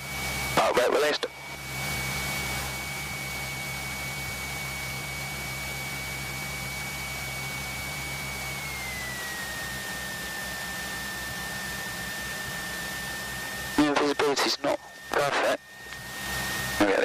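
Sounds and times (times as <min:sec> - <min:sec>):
aircraft engine droning: 0:00.0 - 0:17.0
thin high whine: 0:07.9 - 0:17.0.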